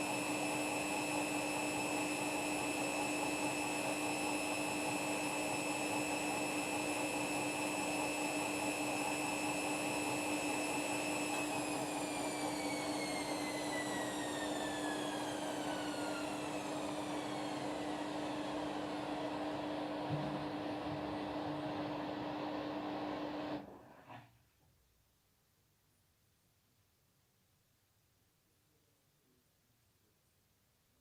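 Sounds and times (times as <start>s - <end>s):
washing machine spinning: 0.0s - 24.1s.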